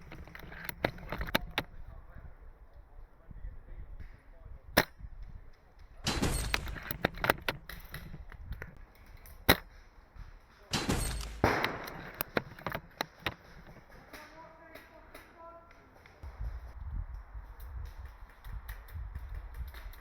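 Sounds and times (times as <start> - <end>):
small clicks: 0.0 - 1.7, 4.8 - 20.0
airsoft rifle cracks: 10.7 - 16.3.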